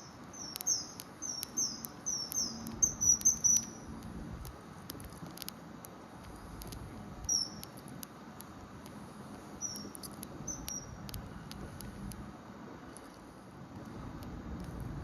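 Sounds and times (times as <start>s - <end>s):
bird whistled calls: 0.0s - 3.9s, 7.3s - 7.6s, 9.6s - 11.0s
background hiss: 0.0s - 15.0s
faint clicks: 0.2s - 12.3s, 12.9s - 14.9s.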